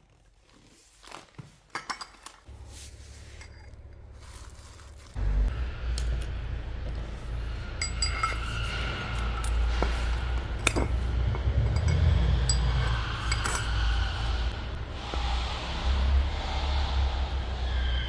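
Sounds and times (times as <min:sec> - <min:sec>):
steady low rumble: 0:05.1 - 0:18.0
metal parts clinking: 0:11.7 - 0:13.7.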